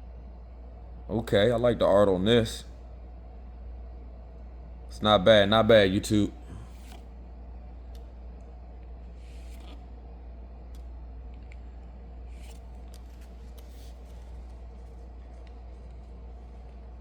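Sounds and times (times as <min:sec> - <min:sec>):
low electrical hum: 0:00.0 - 0:17.0
cards sliding and scraping: 0:06.7 - 0:07.1, 0:09.0 - 0:09.9, 0:12.2 - 0:16.2.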